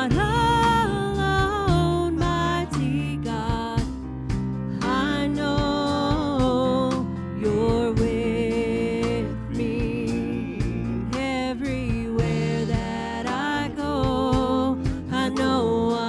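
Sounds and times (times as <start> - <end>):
worship band playing: 0.0 - 16.0.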